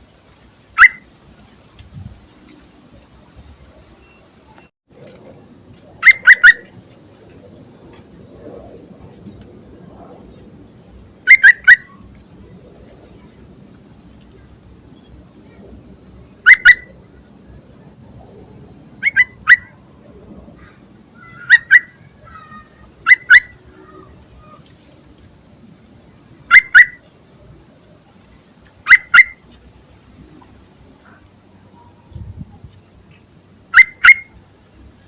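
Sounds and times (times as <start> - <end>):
bulbul calling: 0.7 - 1.1, 6.0 - 6.9, 11.2 - 12.2, 16.3 - 17.6, 19.0 - 19.8, 20.6 - 24.7, 26.0 - 27.1, 28.8 - 29.6, 33.7 - 34.4.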